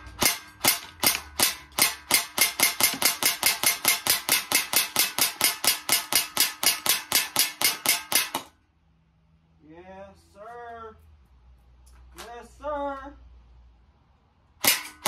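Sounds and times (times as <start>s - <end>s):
airsoft rifle firing: 0.0s - 8.6s, 14.6s - 15.0s.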